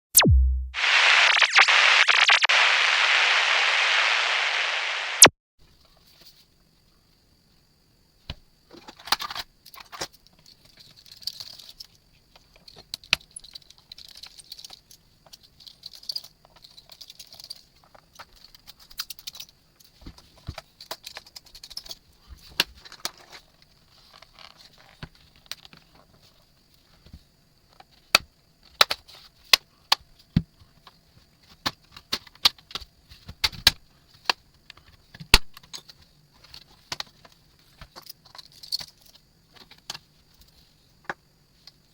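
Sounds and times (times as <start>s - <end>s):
faint high whine: 0.2s - 5.3s.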